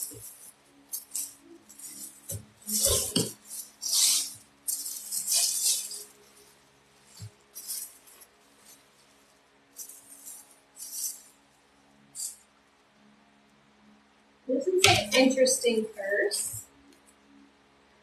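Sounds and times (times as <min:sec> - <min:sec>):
packaging rustling and crinkling: 0:00.0 - 0:11.2.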